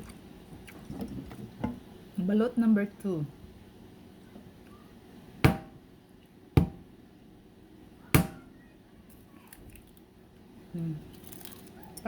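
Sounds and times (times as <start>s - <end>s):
egg knocked on hard surface: 6.6s - 6.8s.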